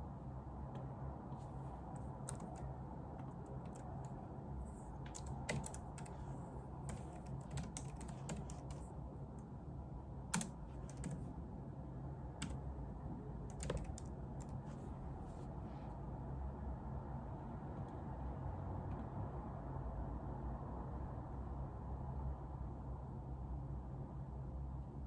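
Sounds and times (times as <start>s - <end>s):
low background hum: 0.0s - 25.0s
keyboard typing: 1.8s - 8.9s, 10.3s - 11.3s, 12.4s - 12.6s, 13.5s - 14.7s.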